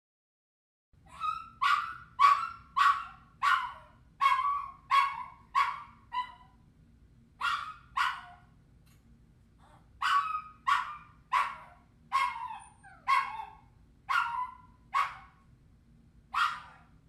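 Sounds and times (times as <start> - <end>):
dog whining: 1.1 - 6.5, 9.6 - 13.6.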